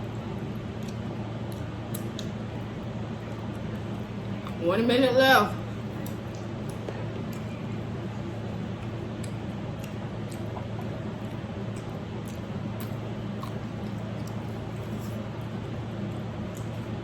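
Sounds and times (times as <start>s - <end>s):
steady low hum: 0.0s - 17.0s
people chewing: 5.8s - 17.0s.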